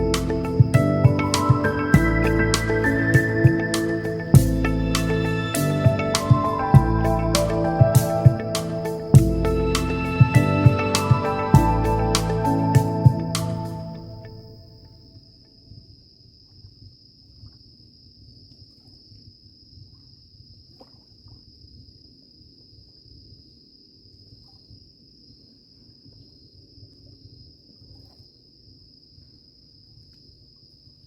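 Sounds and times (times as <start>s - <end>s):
low uneven rumble: 0.0s - 14.7s
crickets trilling: 0.0s - 31.0s.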